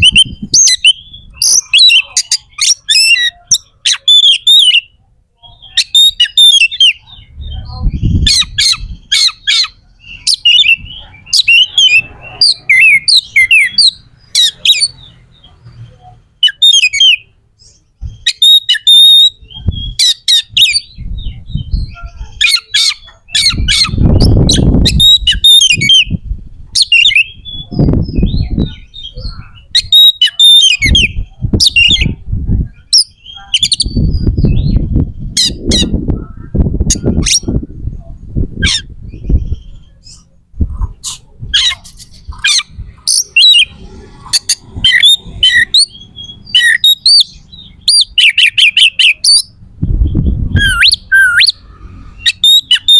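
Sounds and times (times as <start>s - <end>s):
bird singing harsh clicking song: 5.5s - 32.2s, 44.4s - 51.6s
low rumbling noise: 7.0s - 16.4s, 30.9s - 48.2s, 48.9s - 52.8s.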